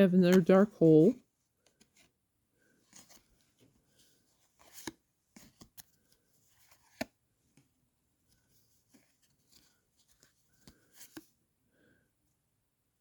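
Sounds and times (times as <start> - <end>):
trading cards rustling and clicking: 2.9 - 7.2, 8.8 - 11.4.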